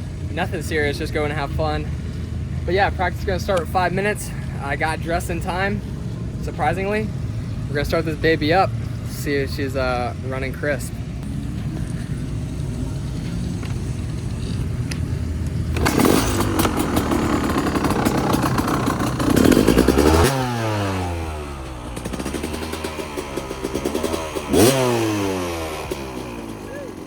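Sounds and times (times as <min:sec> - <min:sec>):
dirt bike engine revving: 0:11.2 - 0:27.0.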